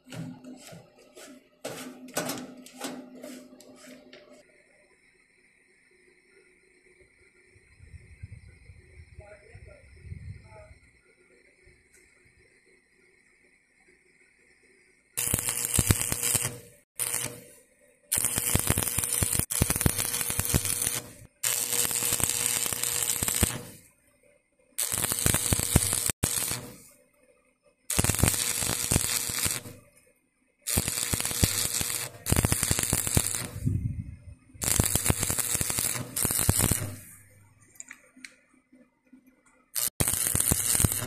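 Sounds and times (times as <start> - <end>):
arc welding crackling sizzle: 10.4 - 24.2, 24.8 - 27.1, 27.8 - 38.4, 39.7 - 41.0.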